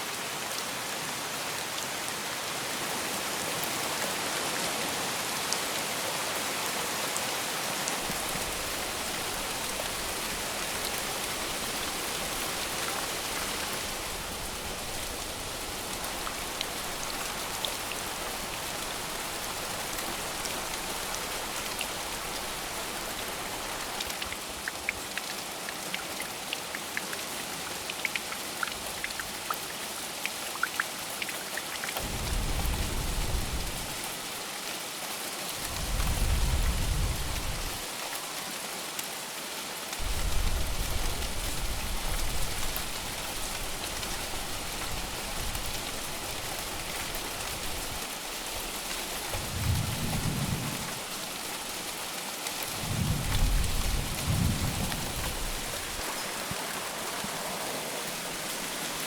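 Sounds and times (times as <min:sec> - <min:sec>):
heavy rain hiss: 0:03.1 - 0:24.2, 0:32.0 - 0:59.0
low rumble of thunder: 0:32.0 - 0:34.0, 0:35.7 - 0:37.8, 0:40.0 - 0:48.0, 0:49.2 - 0:51.7, 0:52.7 - 0:56.2.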